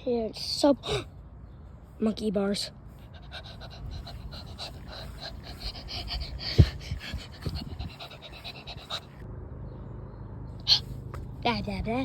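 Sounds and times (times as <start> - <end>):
rapid panting: 2.9 - 9.2.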